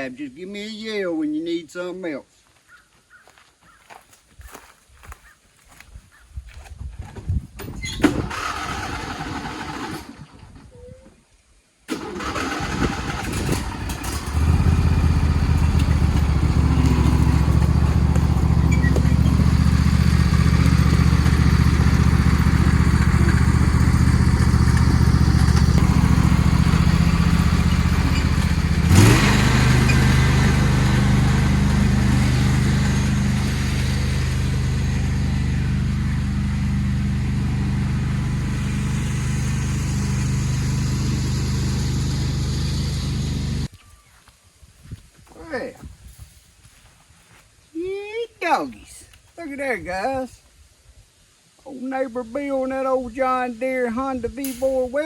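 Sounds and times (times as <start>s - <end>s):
tractor engine running: 7.8s - 10.5s, 11.9s - 43.7s.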